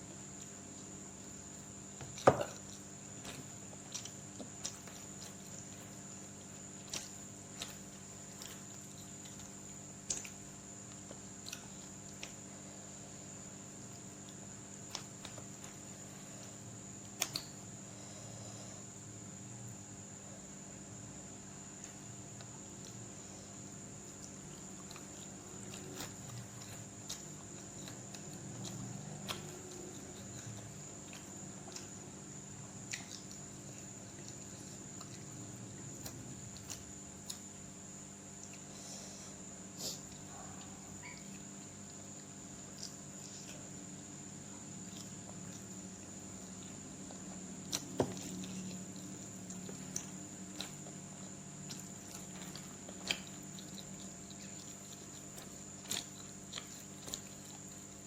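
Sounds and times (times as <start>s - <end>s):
electrical hum: 0.0s - 58.0s
person chewing food: 0.3s - 13.1s, 21.6s - 58.0s.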